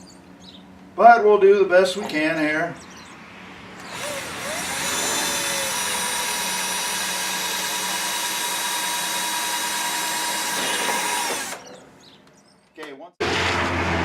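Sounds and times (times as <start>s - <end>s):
electric drill spinning: 3.8s - 11.7s.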